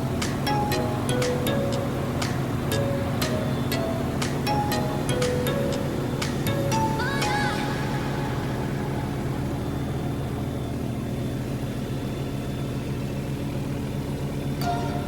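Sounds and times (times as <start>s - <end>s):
helicopter engine and rotor: 8.0s - 14.6s.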